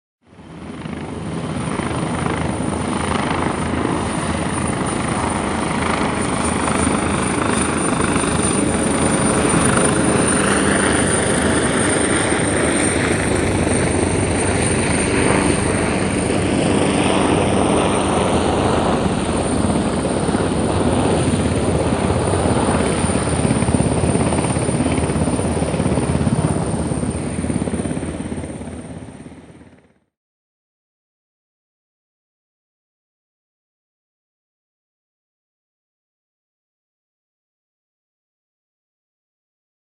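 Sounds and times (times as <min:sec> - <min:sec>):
helicopter flying over: 0:00.2 - 0:30.1.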